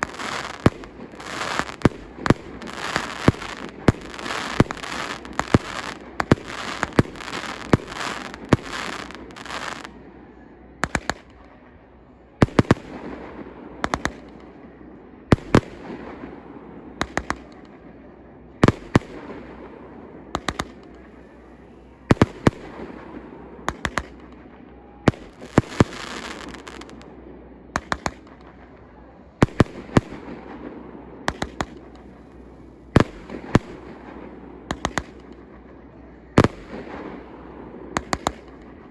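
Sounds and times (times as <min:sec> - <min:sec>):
firework crackle: 0:00.0 - 0:10.0, 0:10.8 - 0:11.4, 0:12.4 - 0:14.6, 0:15.3 - 0:16.3, 0:17.0 - 0:17.8, 0:20.4 - 0:24.4, 0:25.0 - 0:27.1, 0:29.4 - 0:35.5, 0:36.4 - 0:38.8
firework bangs: 0:00.0 - 0:10.1, 0:10.8 - 0:11.5, 0:12.4 - 0:18.0, 0:18.6 - 0:27.2, 0:27.8 - 0:38.9.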